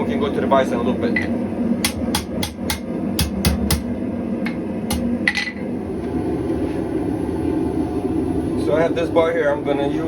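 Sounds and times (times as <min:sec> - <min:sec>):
steady low rumble: 0:01.3 - 0:10.0
hammer striking steel: 0:01.8 - 0:03.9.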